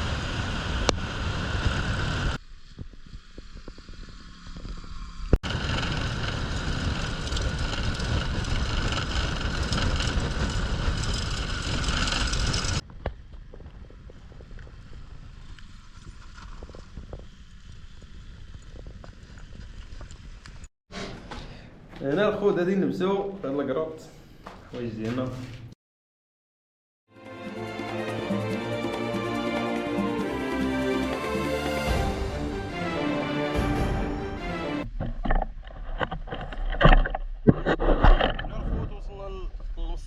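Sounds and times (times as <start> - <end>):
car road and wind noise: 0.0 - 20.6.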